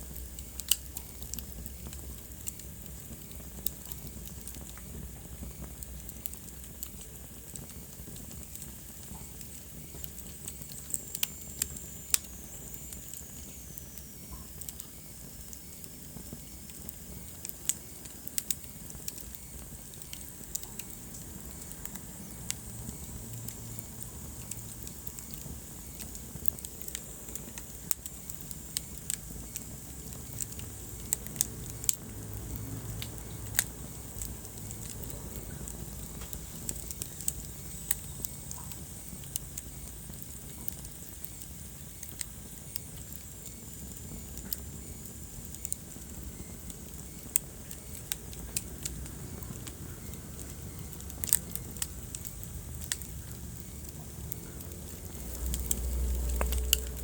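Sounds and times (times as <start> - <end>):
fire crackling and popping: 0.0 - 57.0
fire rumbling: 0.0 - 57.0.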